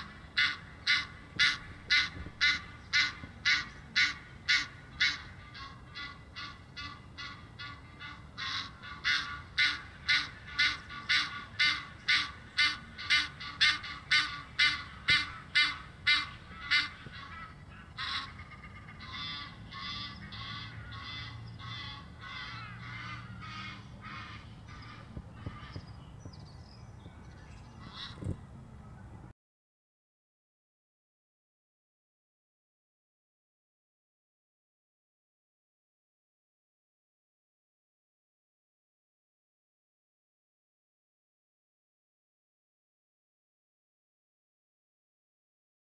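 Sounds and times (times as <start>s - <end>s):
geese honking: 0.0s - 26.1s, 27.2s - 29.1s.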